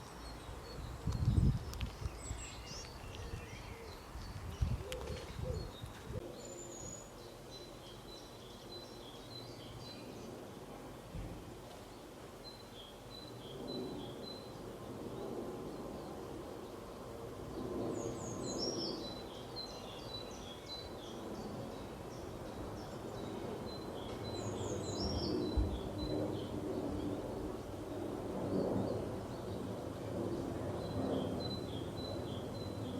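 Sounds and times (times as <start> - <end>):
small birds chirping and singing: 0.0 - 10.5, 17.6 - 32.9
outdoor background hiss: 0.0 - 32.9.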